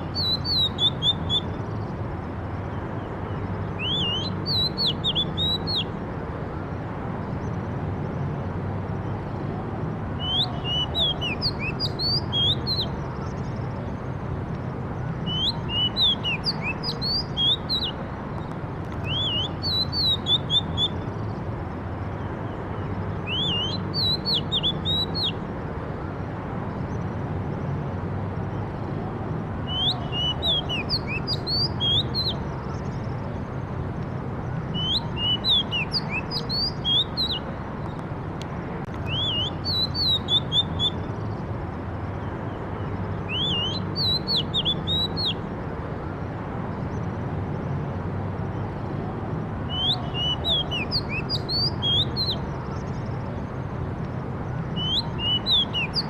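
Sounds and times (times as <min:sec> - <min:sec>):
songbird singing whistled notes: 0:00.0 - 0:02.0, 0:02.6 - 0:06.0, 0:10.2 - 0:13.9, 0:15.0 - 0:21.4, 0:22.1 - 0:25.4, 0:29.6 - 0:33.2, 0:34.5 - 0:38.0, 0:38.9 - 0:41.4, 0:42.1 - 0:45.4, 0:49.7 - 0:53.2, 0:54.5 - 0:56.0.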